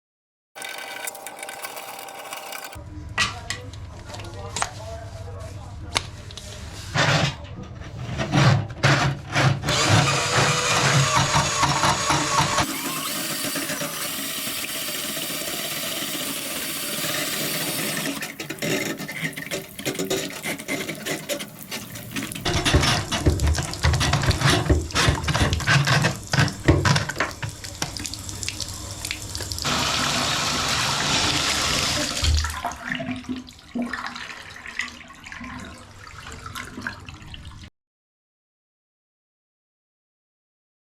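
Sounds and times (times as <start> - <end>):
water running from faucet: 10.2 - 32.7
knocks and clatter: 18.2 - 27.6.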